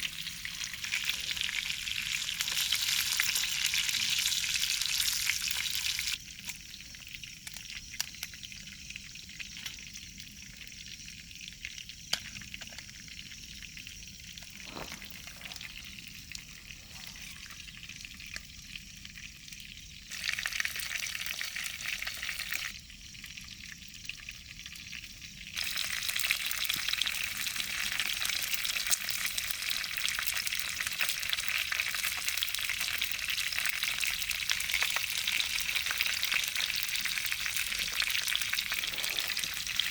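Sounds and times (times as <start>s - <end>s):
food sizzling in a pan: 0.0s - 39.9s
light crackles: 12.1s - 19.7s.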